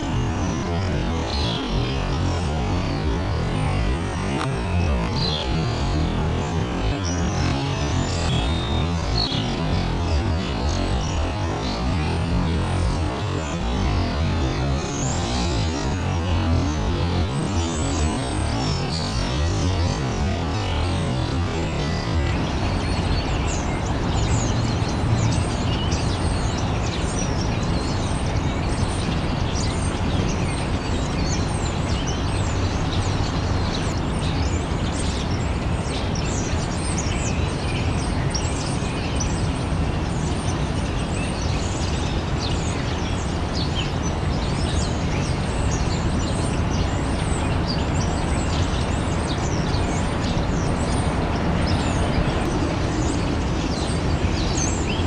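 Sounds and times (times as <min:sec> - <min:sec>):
small birds chirping: 0:00.0 - 0:55.0.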